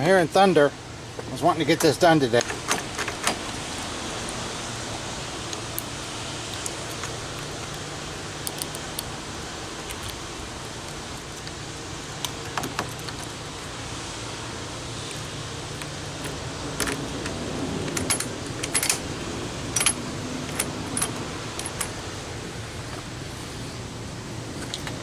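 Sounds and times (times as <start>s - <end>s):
small metallic clicks and rattles: 5.4s - 13.5s, 15.0s - 22.3s.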